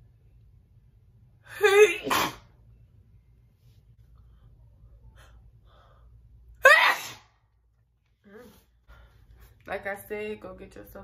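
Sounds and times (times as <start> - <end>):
woman sneezing: 1.5 - 2.5, 6.6 - 7.3.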